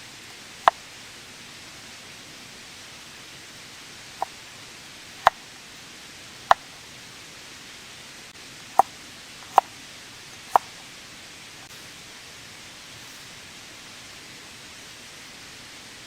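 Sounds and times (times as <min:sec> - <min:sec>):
rain hissing: 0:00.0 - 0:16.0
sharp pops or ticks: 0:05.2 - 0:05.5, 0:06.5 - 0:06.8, 0:08.8 - 0:09.7, 0:10.4 - 0:10.8.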